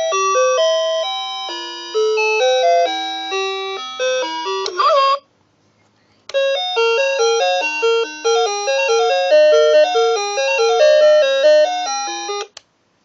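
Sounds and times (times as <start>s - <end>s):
alarm clock beeping melody: 0.0s - 5.2s, 6.4s - 12.5s.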